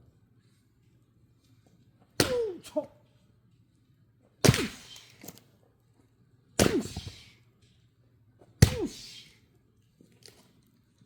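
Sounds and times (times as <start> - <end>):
axe splitting firewood: 2.2 - 2.7, 4.4 - 5.2, 6.6 - 7.3, 8.6 - 9.2.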